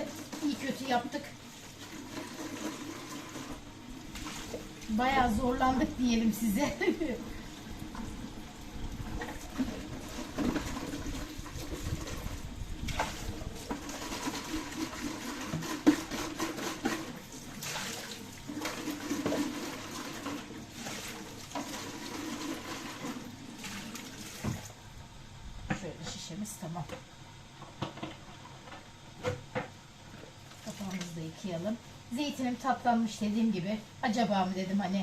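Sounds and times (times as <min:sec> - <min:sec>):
water running and splashing: 0:00.0 - 0:24.8.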